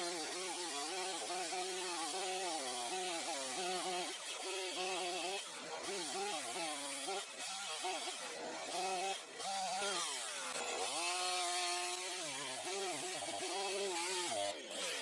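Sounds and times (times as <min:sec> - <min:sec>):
chainsaw engine revving: 0:00.0 - 0:15.0.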